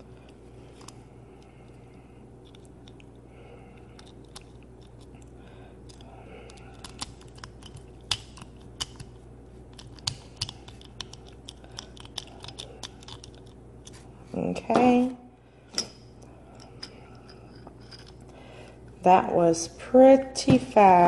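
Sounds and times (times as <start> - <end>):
lock pick clicking and scraping: 5.9 - 14.0, 16.6 - 18.2.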